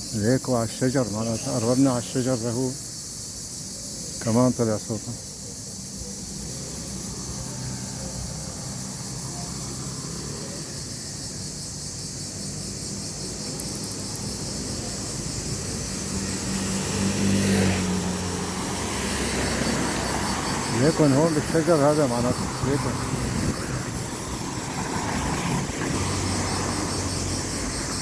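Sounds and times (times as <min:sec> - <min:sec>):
insects droning: 0:00.0 - 0:28.0
road traffic rumble: 0:00.0 - 0:28.0
vehicle passing: 0:06.3 - 0:28.0.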